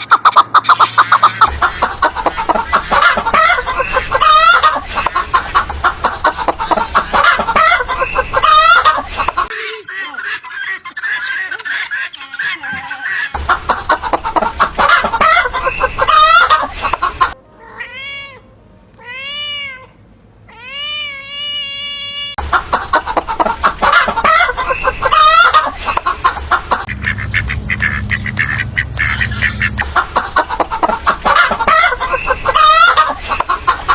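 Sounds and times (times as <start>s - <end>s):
hens clucking: 0.0s - 17.4s, 22.4s - 33.9s
kitten meowing: 17.6s - 18.4s, 19.0s - 19.9s
low hum: 22.4s - 33.9s.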